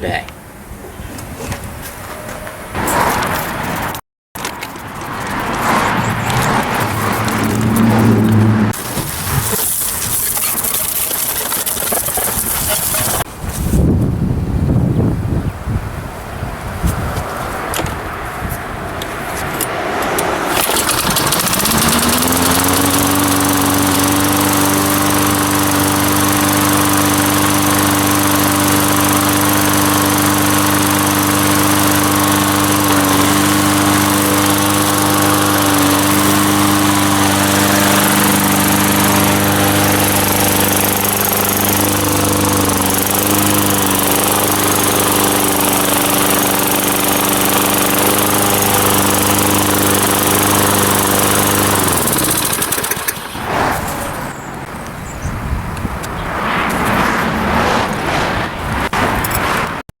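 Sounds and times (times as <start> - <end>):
lawn mower engine starting and running: 2.8 - 13.7, 17.6 - 55.0.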